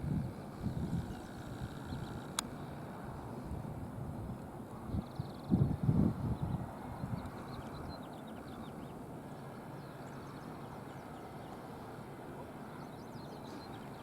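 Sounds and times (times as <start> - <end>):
small birds chirping: 0.7 - 2.4.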